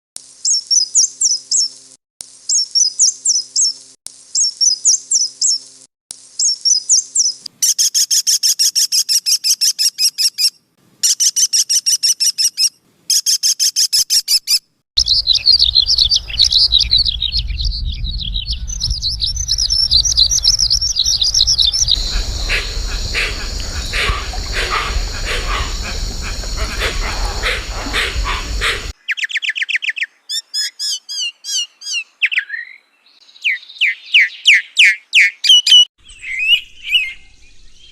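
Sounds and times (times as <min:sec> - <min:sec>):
sharp repeated bird calls: 0:07.6 - 0:17.4, 0:18.6 - 0:37.0
high bird warbling: 0:15.0 - 0:17.4, 0:18.2 - 0:30.0
low wind rumble: 0:15.0 - 0:29.0
bird song phrase: 0:15.0 - 0:37.9.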